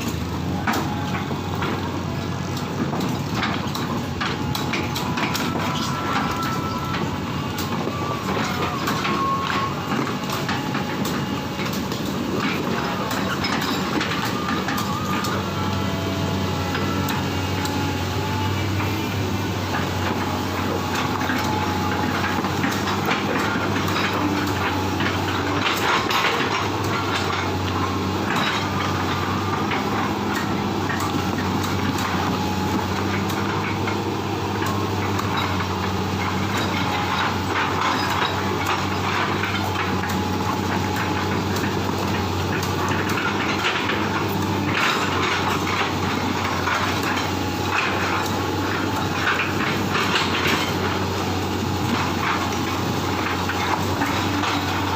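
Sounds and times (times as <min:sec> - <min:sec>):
excavator diesel engine running: 0:00.0 - 0:54.9
machine knocks and rattles: 0:00.0 - 0:54.9.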